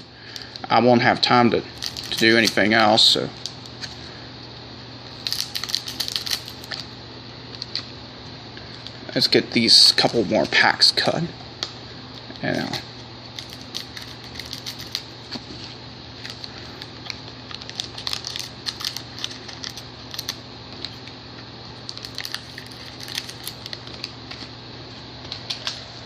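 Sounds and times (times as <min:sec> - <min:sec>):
low steady hum: 0:00.0 - 0:26.0
card pack wrappers crinkling: 0:01.7 - 0:04.0, 0:05.1 - 0:06.9, 0:13.4 - 0:15.6, 0:16.2 - 0:21.1, 0:21.8 - 0:24.5.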